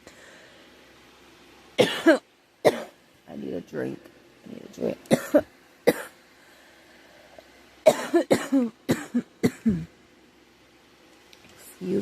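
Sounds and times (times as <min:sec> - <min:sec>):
girl coughing: 0:01.8 - 0:03.0, 0:05.1 - 0:06.2, 0:07.8 - 0:10.0.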